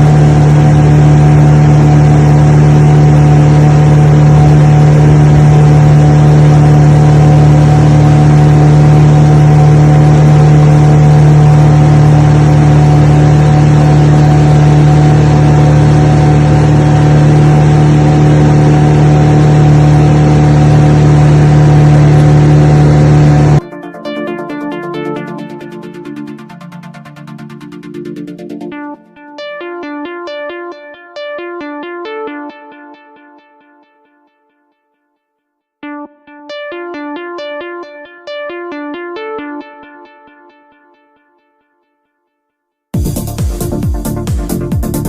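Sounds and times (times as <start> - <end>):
engine running steadily: 0.0 - 23.6.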